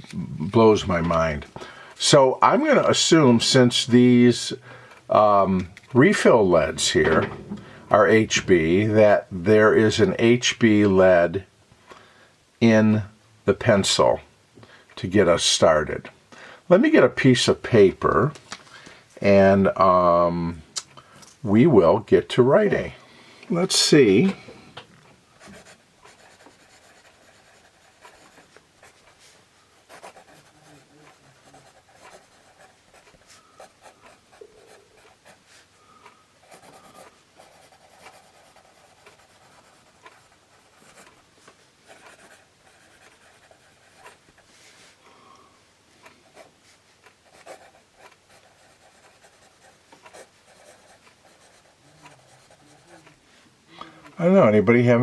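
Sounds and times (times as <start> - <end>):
pencil scratching on paper: 25.4 - 35.5, 36.4 - 41.2, 41.8 - 44.4, 47.2 - 53.2.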